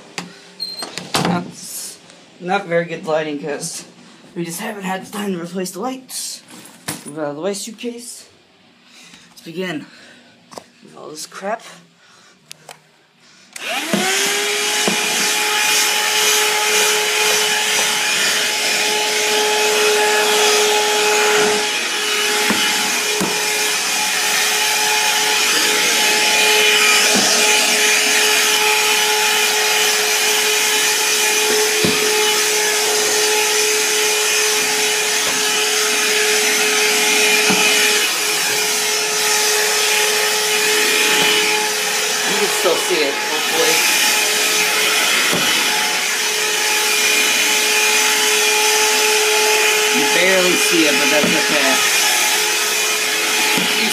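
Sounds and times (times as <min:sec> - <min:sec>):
handheld vacuum whining: 0:13.5 - 0:53.9.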